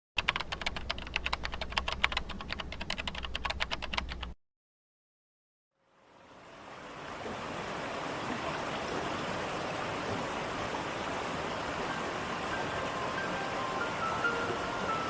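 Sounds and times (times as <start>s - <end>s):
waterfall rushing: 6.3s - 15.0s.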